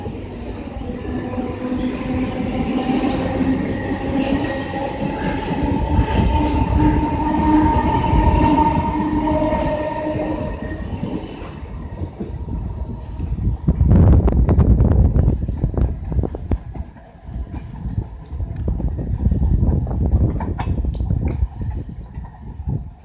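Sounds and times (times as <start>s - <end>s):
electric train motors whining: 0.0s - 16.3s
train wheels rumbling on track: 0.0s - 23.0s.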